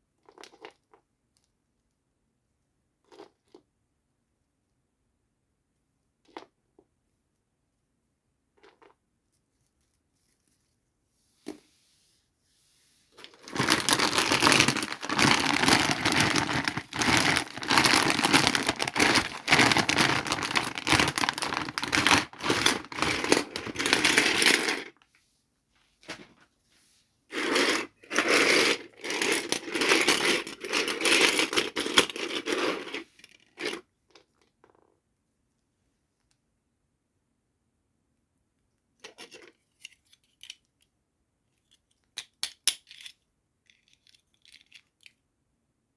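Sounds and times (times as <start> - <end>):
plastic and cardboard tearing: 13.2 - 24.8.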